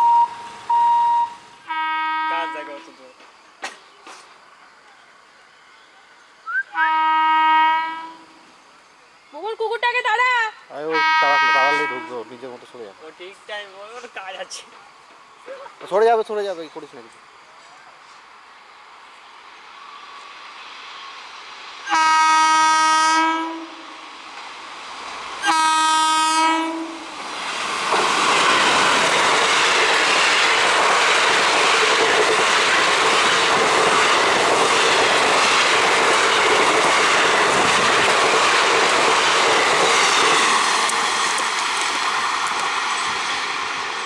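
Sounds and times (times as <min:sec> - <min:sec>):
train horn blasts: 0:00.0 - 0:03.0, 0:06.5 - 0:08.5, 0:10.8 - 0:12.3, 0:21.8 - 0:24.0, 0:25.4 - 0:27.1
train passing with loud rush: 0:00.0 - 0:44.0.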